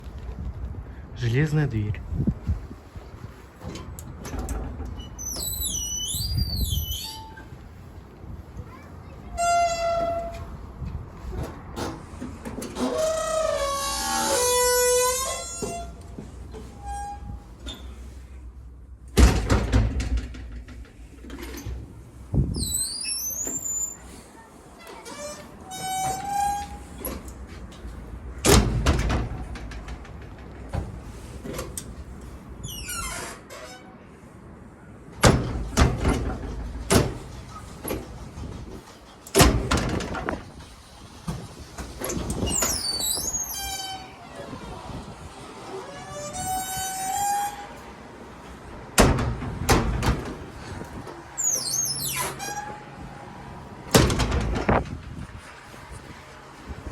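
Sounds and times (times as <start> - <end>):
door rattling: 3.6 - 7.4, 19.1 - 24.0, 24.8 - 33.5, 35.2 - 45.2, 48.4 - 56.0
iron door squeaking: 4.2 - 7.6, 8.7 - 10.6, 11.8 - 18.3, 22.4 - 34.1, 35.2 - 55.0
creak gliding in pitch: 12.8 - 16.0, 51.2 - 53.0
iron door slamming: 19.2 - 21.8, 28.4 - 31.9, 35.2 - 40.6, 48.9 - 53.1, 53.8 - 55.2
metal rattles: 25.7 - 32.6.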